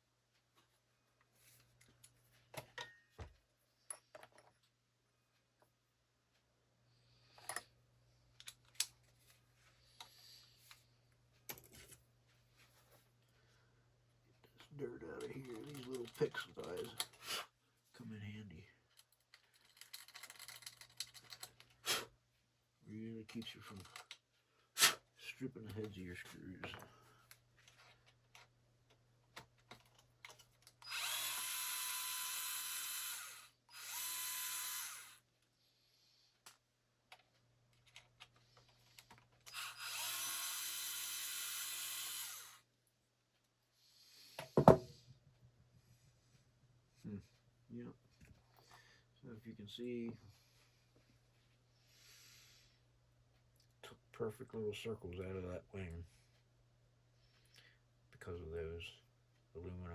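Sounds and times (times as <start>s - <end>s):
small hard parts clicking: 15.2s - 17.2s, 18.9s - 21.8s, 23.3s - 24.2s, 26.7s - 31.5s, 36.4s - 40.2s
cordless power driver running: 30.8s - 35.2s, 39.5s - 42.6s.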